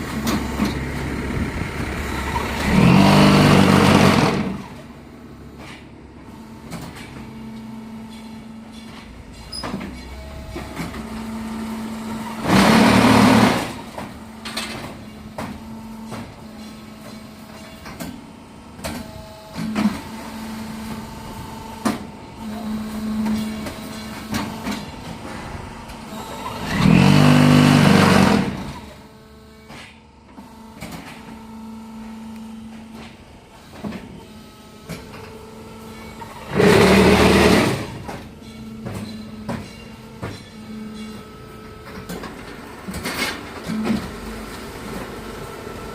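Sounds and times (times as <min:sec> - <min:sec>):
block making machine humming: 0:00.0 - 0:45.9
machine clanks and clicks: 0:06.6 - 0:11.2, 0:12.2 - 0:20.1, 0:21.8 - 0:29.0, 0:32.7 - 0:45.2
loud buzzing of vibrating mould: 0:26.1 - 0:29.2, 0:36.4 - 0:38.0.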